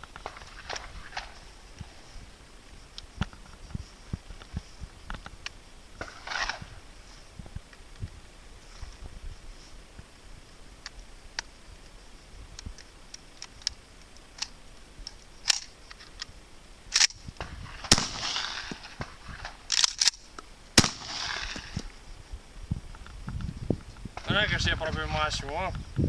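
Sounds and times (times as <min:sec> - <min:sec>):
faint clicks: 0:02.6 - 0:06.1, 0:10.8 - 0:16.3.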